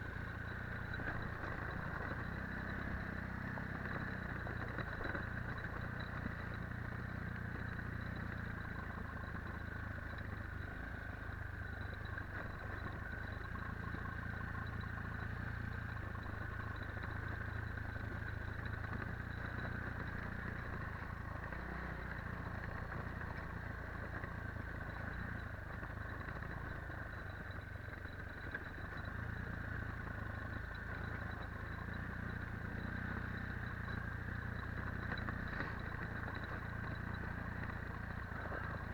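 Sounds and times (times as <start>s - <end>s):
quad bike engine running: 0.0s - 38.9s.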